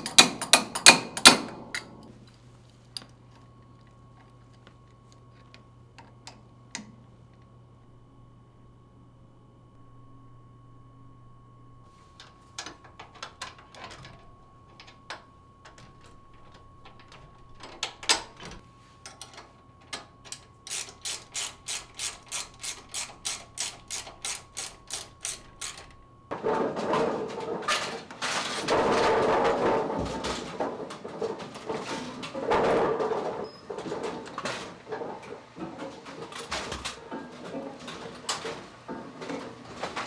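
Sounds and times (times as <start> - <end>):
machine running noise: 20.2 - 34.1
pinsetter clicking and ratcheting: 20.7 - 25.9.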